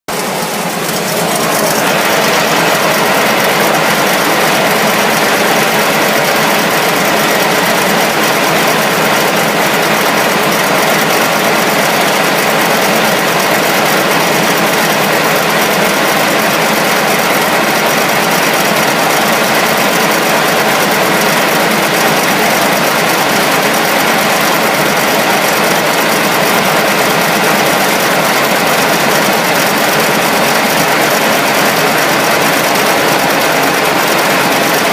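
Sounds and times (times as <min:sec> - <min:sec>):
car engine running: 0:00.1 - 0:34.9
odd engine noise: 0:00.1 - 0:34.9.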